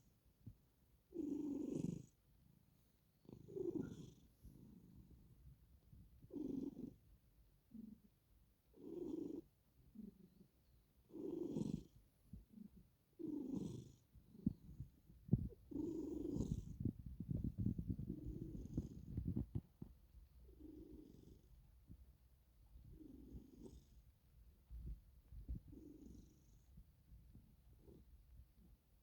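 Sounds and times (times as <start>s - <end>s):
cat purring: 0.0s - 29.0s.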